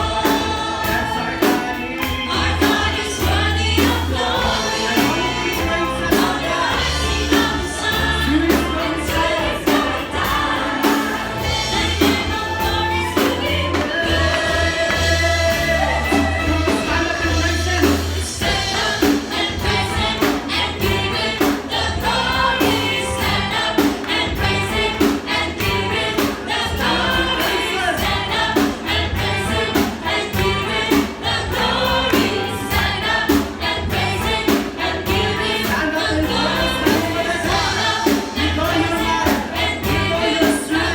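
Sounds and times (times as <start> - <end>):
band with bass and drums: 0.0 - 40.9
group singing gospel song: 0.0 - 40.9.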